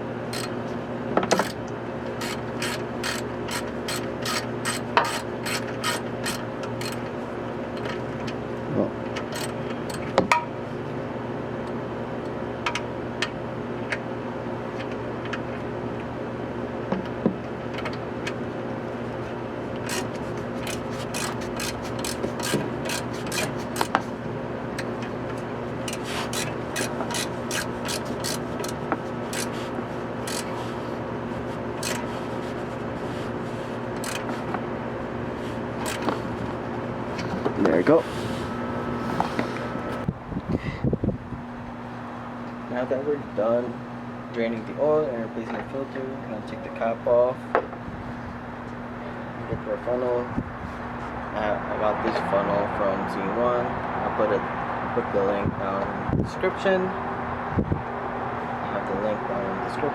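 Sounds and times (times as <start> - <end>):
steady low hum: 0.0 - 59.9
ratchet wrench clicking: 0.3 - 0.6, 1.3 - 1.6, 2.2 - 7.0, 9.3 - 10.1, 19.8 - 24.1, 25.9 - 30.6, 31.8 - 32.2, 34.0 - 34.4, 35.8 - 36.2.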